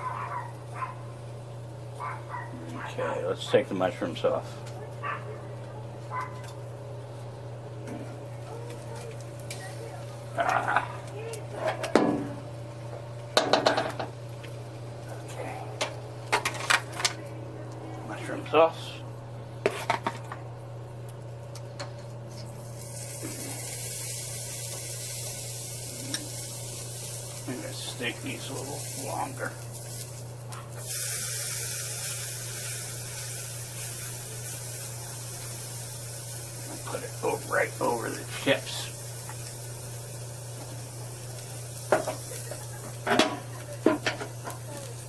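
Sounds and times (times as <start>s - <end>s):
food sizzling on grill: 5.8s - 45.0s
grilling tools clattering: 7.8s - 12.5s, 13.4s - 14.2s, 15.2s - 18.8s, 41.8s - 45.0s.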